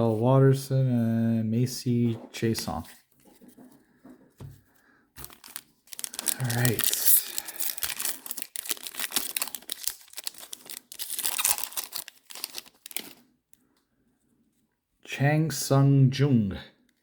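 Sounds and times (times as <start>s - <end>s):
foil wrapper tearing and crinkling: 5.2s - 13.2s.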